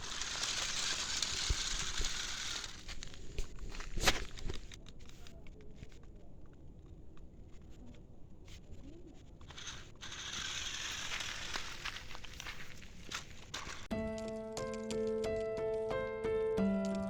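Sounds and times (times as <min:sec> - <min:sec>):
hiss: 0:00.0 - 0:04.2, 0:09.5 - 0:12.6
crackling rustling noise: 0:00.0 - 0:13.9.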